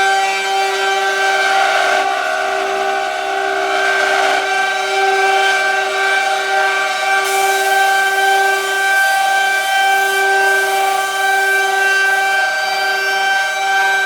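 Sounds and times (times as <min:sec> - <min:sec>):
hiss: 0:07.2 - 0:12.4.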